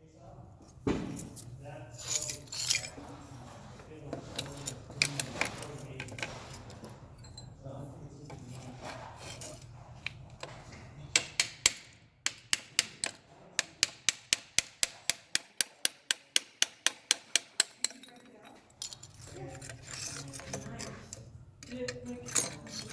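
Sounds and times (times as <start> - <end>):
low room murmur: 0.0 - 22.9
hammer striking metal: 11.1 - 18.0.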